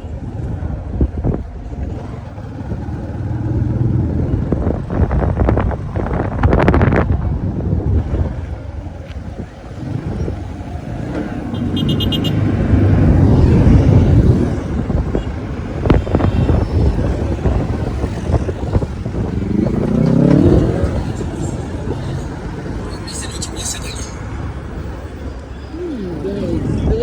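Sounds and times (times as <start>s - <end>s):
vehicle passing rumble: 0.0s - 27.0s
engine revving: 9.7s - 23.5s.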